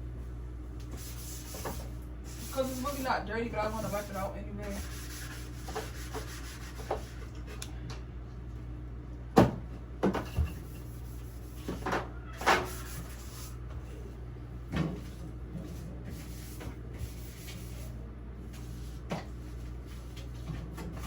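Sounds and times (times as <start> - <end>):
steady low hum: 0.0 - 21.0
cloth wiping refrigerator: 0.9 - 7.2, 12.6 - 13.6, 14.9 - 21.0.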